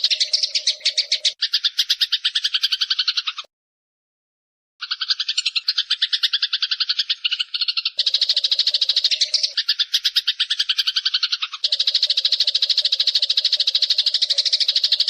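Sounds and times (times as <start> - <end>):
songbird buzzy trill: 0.0 - 2.2, 7.9 - 11.0, 11.6 - 15.0.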